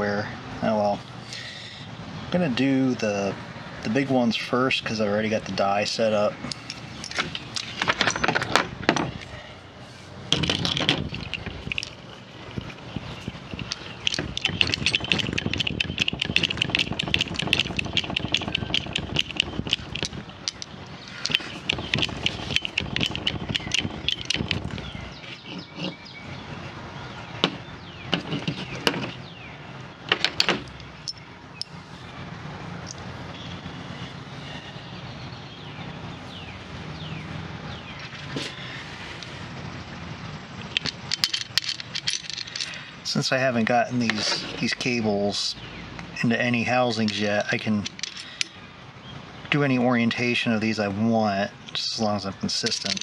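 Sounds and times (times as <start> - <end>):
cable crimper clicking and rattling: 10.3 - 25.0, 40.6 - 42.8, 47.1 - 48.6, 52.6 - 53.0.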